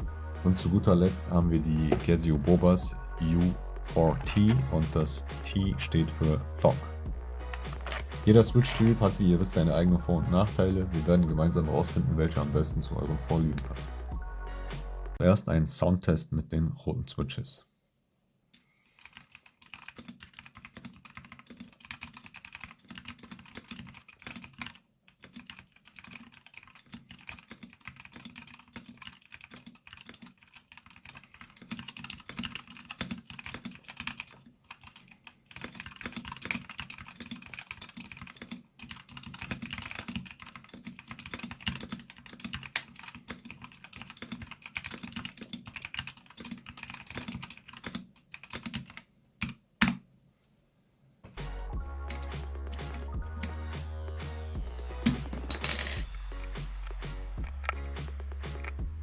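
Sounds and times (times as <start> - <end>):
mechanical keyboard typing: 7.4 - 12.5, 19.0 - 50.0, 56.4 - 58.8.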